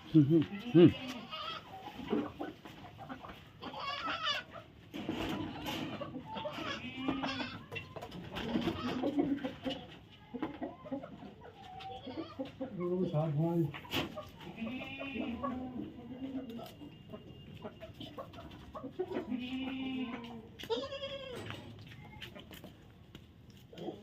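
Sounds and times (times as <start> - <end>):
goats bleating: 0.1 - 1.7, 3.6 - 4.5, 5.5 - 7.7, 11.9 - 12.5, 14.4 - 16.6, 19.1 - 21.6
animal cries: 3.6 - 4.5, 5.6 - 7.7.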